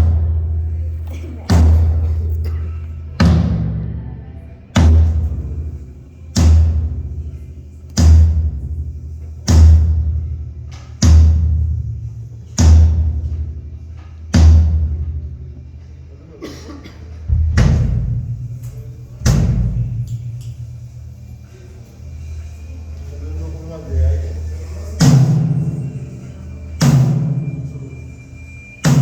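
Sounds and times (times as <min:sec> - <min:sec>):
deep booming drum hits: 0:01.5 - 0:02.5, 0:03.2 - 0:07.4, 0:08.0 - 0:13.6, 0:14.4 - 0:15.4, 0:17.3 - 0:21.0.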